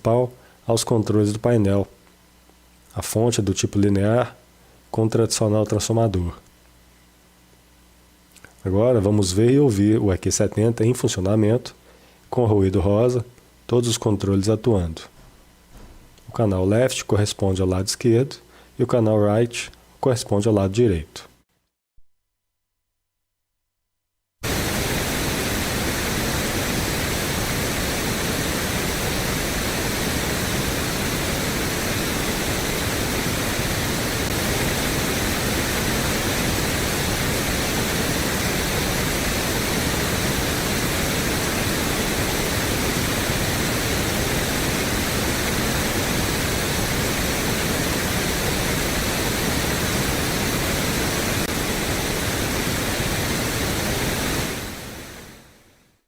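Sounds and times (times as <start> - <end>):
pink noise hiss: 24.4 - 56.0.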